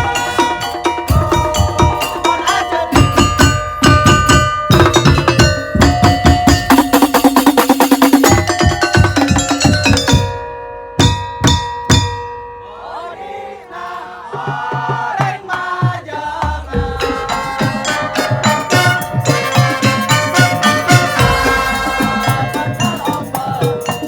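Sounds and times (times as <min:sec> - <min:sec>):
wavering melody line: 0:00.0 - 0:07.1, 0:16.8 - 0:24.0
loud percussion strikes: 0:00.0 - 0:12.3, 0:14.3 - 0:24.0
percussion ensemble music: 0:00.0 - 0:24.0.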